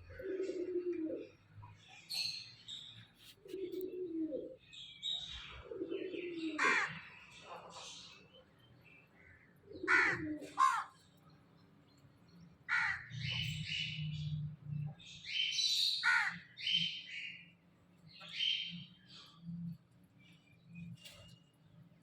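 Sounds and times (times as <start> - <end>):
crows cawing: 6.5 - 7.1, 9.2 - 11.0, 12.7 - 13.4, 16.0 - 16.6.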